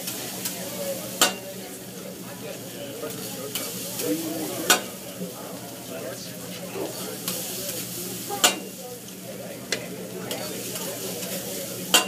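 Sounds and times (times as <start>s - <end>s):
food sizzling on a griddle: 0.0s - 12.0s
metal utensils clacking on hot plate: 1.2s - 1.4s, 4.6s - 4.9s, 8.4s - 8.8s, 9.7s - 12.0s.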